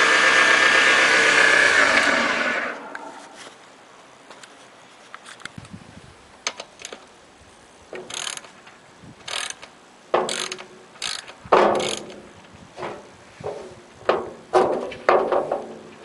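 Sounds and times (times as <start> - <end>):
ratchet wrench clicking: 8.1 - 8.5, 9.3 - 9.7, 10.3 - 12.2.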